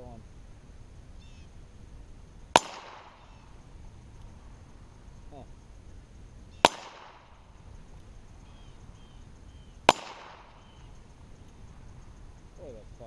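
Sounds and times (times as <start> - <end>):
revolver gunshots with echo: 2.5 - 3.6, 6.5 - 7.9, 9.8 - 11.0.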